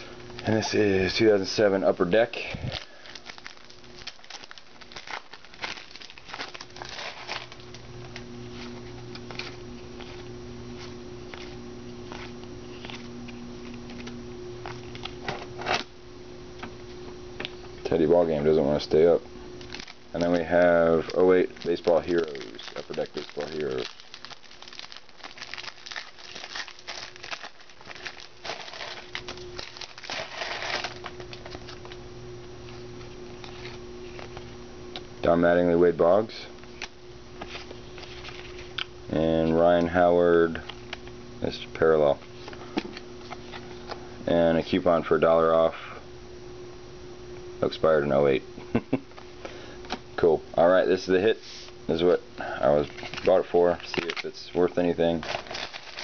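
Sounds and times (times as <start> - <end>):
plastic wrapper crinkling: 0.0 - 15.9, 19.6 - 32.0, 52.8 - 56.0
low steady hum: 0.0 - 56.0
trading cards clicking and rustling: 2.6 - 15.9, 19.6 - 32.0, 52.8 - 56.0.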